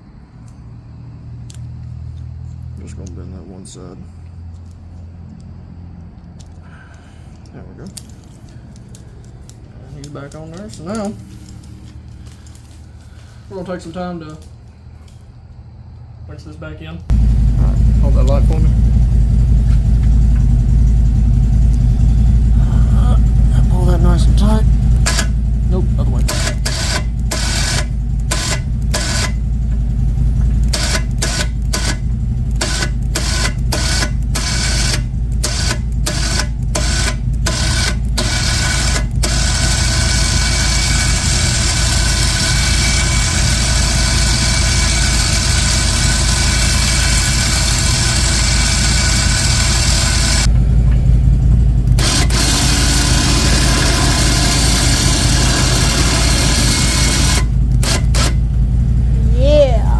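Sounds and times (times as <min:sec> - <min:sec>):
low engine hum: 0:00.0 - 0:59.9
electric winch reeling rope: 0:26.1 - 0:29.4, 0:30.6 - 0:50.5, 0:51.9 - 0:58.4.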